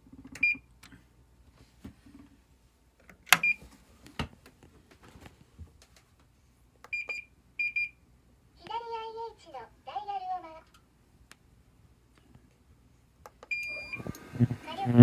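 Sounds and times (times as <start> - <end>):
cooktop control panel beeps: 0.4 - 0.6, 6.9 - 8.0, 13.5 - 14.4.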